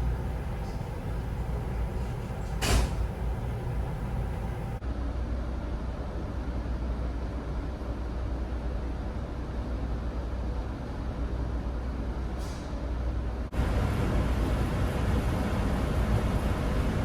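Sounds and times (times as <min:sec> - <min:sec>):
air brake hiss: 0:00.0 - 0:04.8, 0:12.4 - 0:12.9
heavy diesel engine rumbling: 0:00.0 - 0:04.8.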